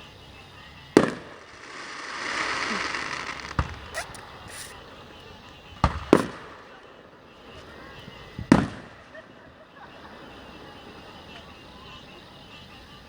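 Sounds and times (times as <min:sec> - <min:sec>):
fireworks crackling: 0:00.2 - 0:07.0
fireworks bangs: 0:00.6 - 0:09.1.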